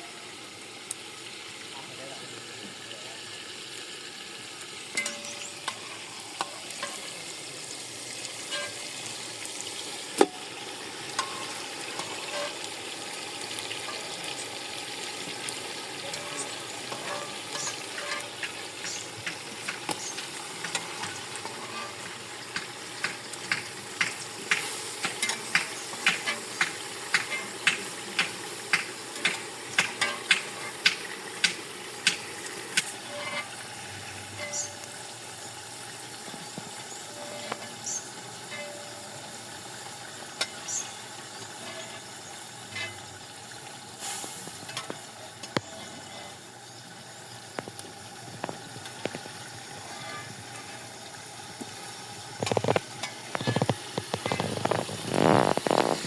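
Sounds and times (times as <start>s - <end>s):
food sizzling in a pot: 0.0s - 56.0s.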